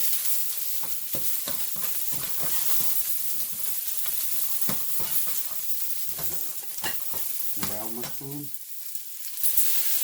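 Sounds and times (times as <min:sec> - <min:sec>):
onion sizzling in oil: 0:00.0 - 0:10.0
utensil stirring in pan: 0:00.0 - 0:10.0.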